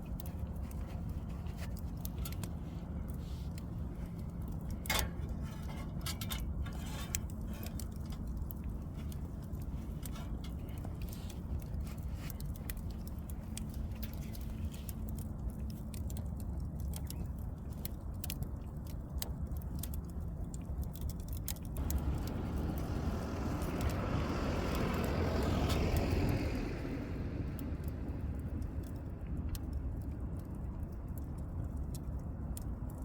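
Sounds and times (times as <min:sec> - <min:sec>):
sharp clicks and crackles: 0:00.0 - 0:26.6, 0:27.4 - 0:33.0
low rumble: 0:21.7 - 0:31.0
vehicle passing by: 0:21.8 - 0:28.4.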